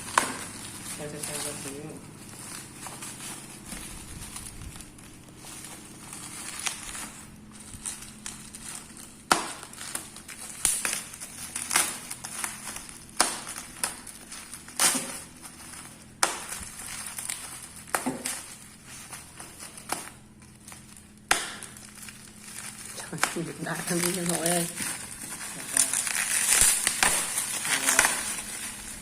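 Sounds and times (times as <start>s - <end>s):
sharp snaps and knocks: 0.0s - 1.5s, 7.8s - 28.8s
packaging crinkling and rustling: 0.0s - 29.0s.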